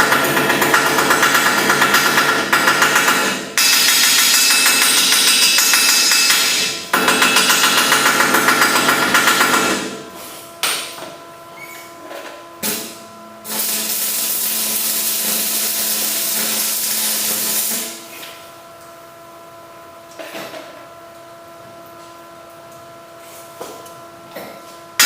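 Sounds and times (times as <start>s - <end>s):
welding arc crackling and hissing: 13.4s - 18.0s.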